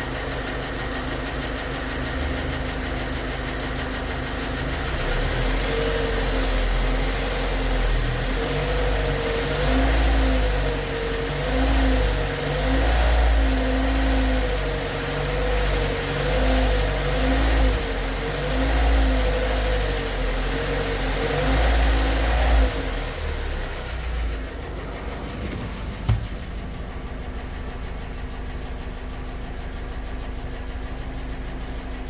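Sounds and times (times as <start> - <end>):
car engine idling: 0.0 - 32.0
mechanical noise in engine: 23.2 - 29.8.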